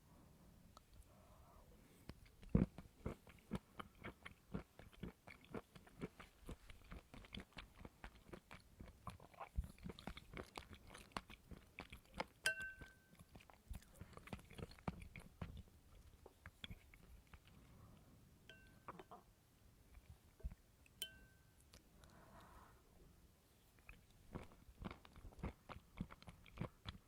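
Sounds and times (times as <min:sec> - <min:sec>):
crunchy chewing: 0:02.1 - 0:17.7, 0:23.8 - 0:27.0.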